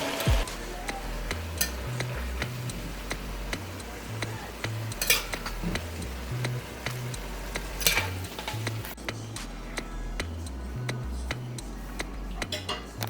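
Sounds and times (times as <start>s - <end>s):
music with bass and ticking beat: 0.0s - 13.0s
metal utensil scraping cookware: 1.5s - 2.9s, 4.9s - 9.0s, 12.4s - 13.0s.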